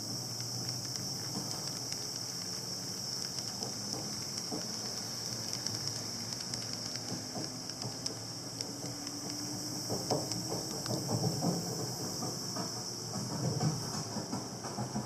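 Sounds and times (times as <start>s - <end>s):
high-pitched hiss: 0.0s - 15.0s
train rumble: 0.0s - 15.0s
light clicks: 0.3s - 11.4s.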